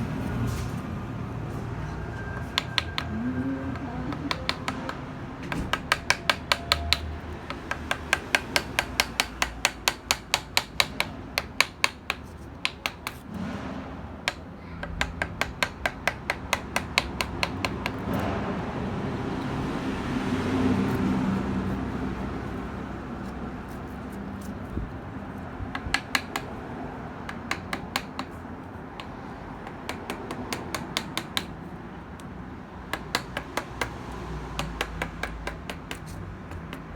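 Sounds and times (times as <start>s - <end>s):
mallet tapping chisel into wood: 2.4s - 13.3s, 14.2s - 18.2s, 25.7s - 26.6s, 27.2s - 31.6s, 32.9s - 36.9s.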